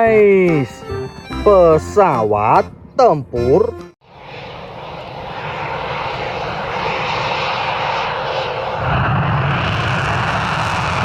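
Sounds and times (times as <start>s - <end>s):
jet engine rushing: 4.0s - 11.0s.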